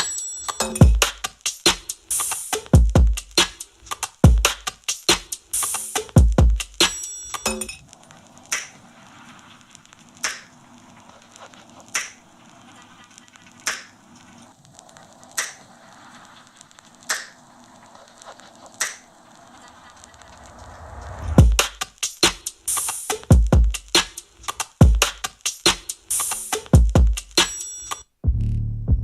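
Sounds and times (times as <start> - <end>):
soft hiss: 0.0 - 28.1
electronic music beat: 0.0 - 29.0
sharp snap-like hits: 10.2 - 10.5.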